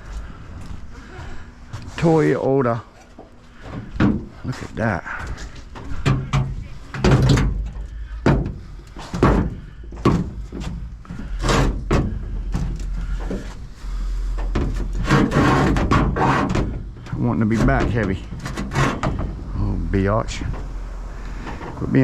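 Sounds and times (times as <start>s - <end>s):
low steady rumble: 0.0s - 22.0s
scrap pieces knocking and thunking: 5.8s - 13.6s, 14.4s - 19.4s.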